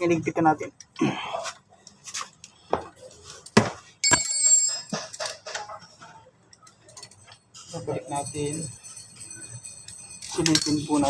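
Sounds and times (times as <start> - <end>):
metal tools clinking: 3.2 - 11.0
bright metallic ring: 4.0 - 5.0.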